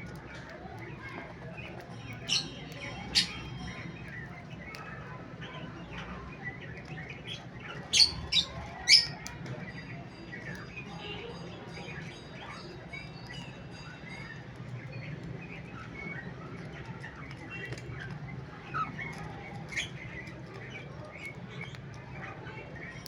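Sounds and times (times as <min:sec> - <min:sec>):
soft chirping: 0:02.1 - 0:04.8, 0:06.7 - 0:09.2
cockatiels squawking: 0:02.2 - 0:04.8, 0:06.6 - 0:09.3.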